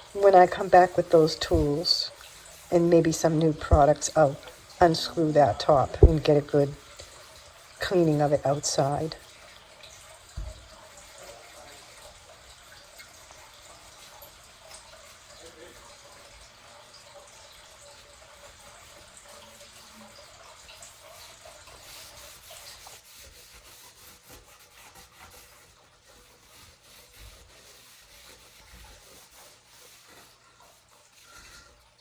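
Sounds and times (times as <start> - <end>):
cloth rubbing on metal: 21.0 - 31.6.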